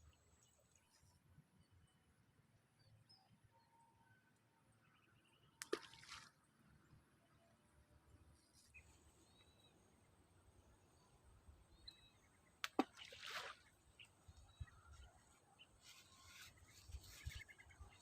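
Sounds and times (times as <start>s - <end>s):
faint bird chirps: 2.8s - 5.6s, 10.9s - 18.0s
bait splashing into water: 5.6s - 6.4s, 12.6s - 13.7s.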